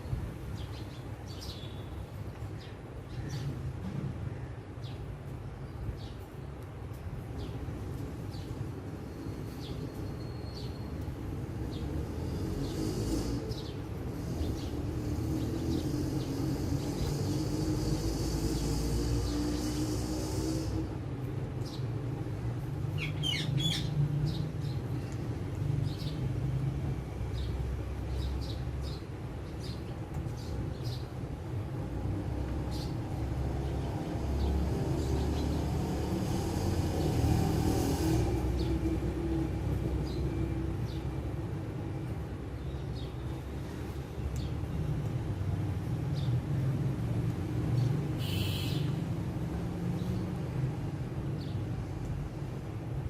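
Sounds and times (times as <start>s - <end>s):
road traffic rumble: 0.0s - 53.0s
high hiss: 14.2s - 20.9s.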